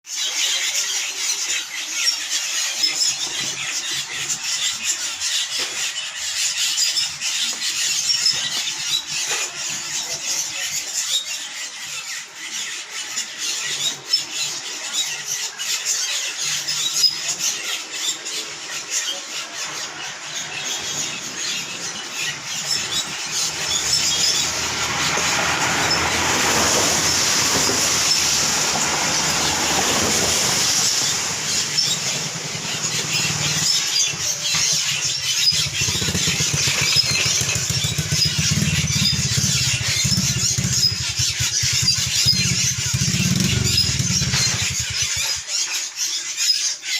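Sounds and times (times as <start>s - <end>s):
flock of birds chirping: 0.0s - 46.9s
steady rushing noise: 20.8s - 45.2s.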